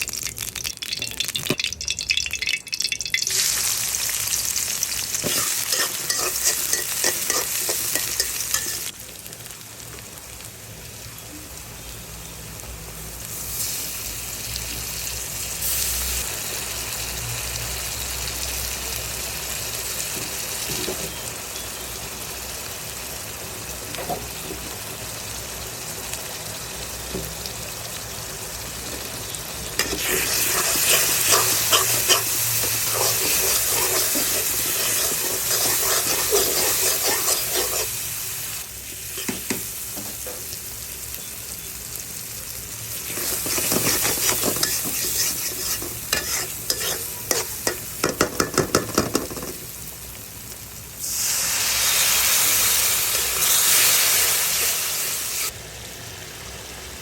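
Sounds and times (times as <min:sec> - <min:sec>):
food sizzling in hot oil: 0:00.0 - 0:57.0
spatula scraping pan: 0:05.2 - 0:08.9, 0:29.8 - 0:38.0, 0:43.1 - 0:47.8.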